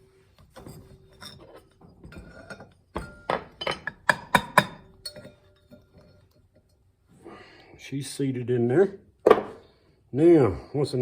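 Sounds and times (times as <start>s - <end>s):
steel parts clinking: 0.5s - 6.8s.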